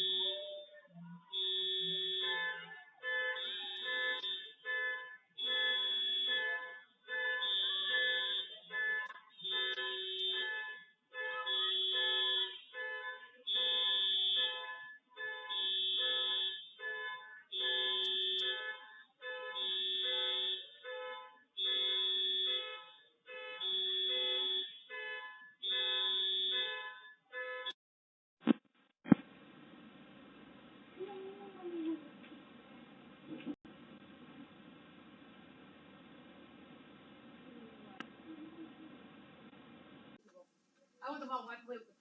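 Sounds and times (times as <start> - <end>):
electronic alarm tones: 0.0 - 0.6.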